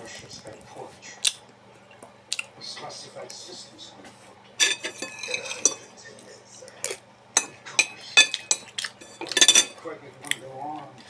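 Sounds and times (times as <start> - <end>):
faint low hum: 0.0 - 11.0
cutlery clinking against dish: 4.6 - 5.9, 6.8 - 10.4.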